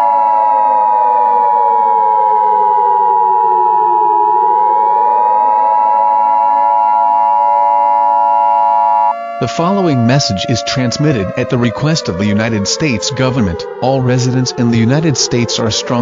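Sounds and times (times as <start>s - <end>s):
wailing siren: 0.0s - 16.0s.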